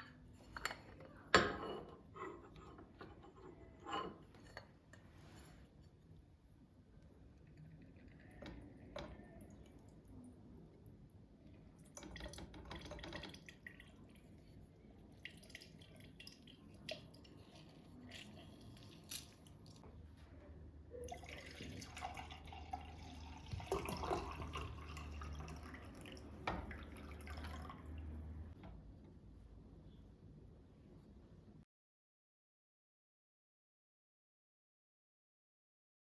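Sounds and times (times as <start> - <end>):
dishes clattering: 0.0 - 5.0
water running in sink: 21.1 - 28.3.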